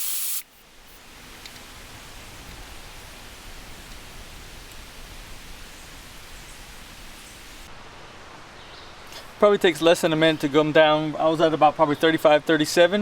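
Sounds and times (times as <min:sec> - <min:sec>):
air hissing from tire: 0:00.0 - 0:07.7.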